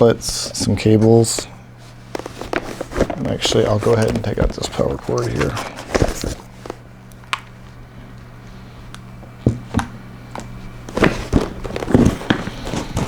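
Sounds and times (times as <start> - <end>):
low steady hum: 0.0 - 13.0
packaging rustling: 1.1 - 6.8, 10.4 - 13.0.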